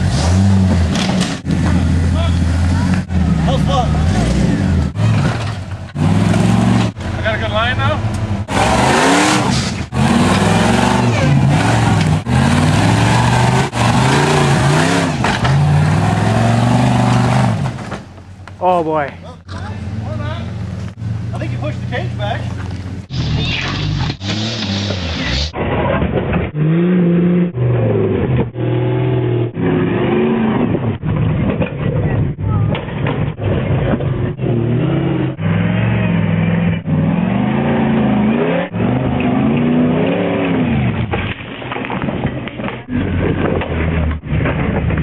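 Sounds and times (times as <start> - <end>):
off-road vehicle engine revving: 0.0 - 18.0, 19.3 - 41.1.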